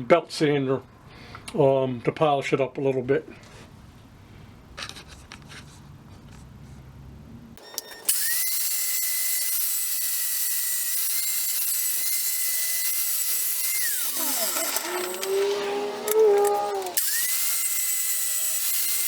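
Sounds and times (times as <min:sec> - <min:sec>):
angle grinder sanding steel: 0:07.6 - 0:19.0.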